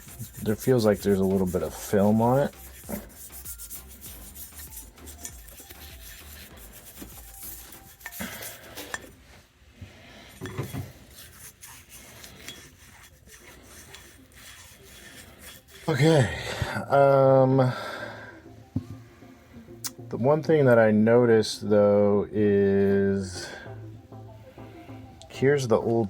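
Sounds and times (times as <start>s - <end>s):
rubbing: 0.0s - 9.1s, 10.7s - 16.1s.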